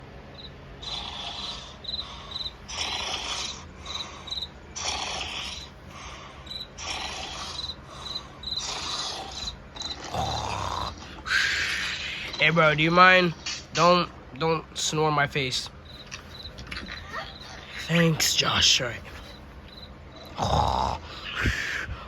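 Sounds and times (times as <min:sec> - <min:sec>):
cricket chirping: 0:00.3 - 0:12.4, 0:15.5 - 0:21.8
breathy snores: 0:00.8 - 0:12.4, 0:19.1 - 0:21.9.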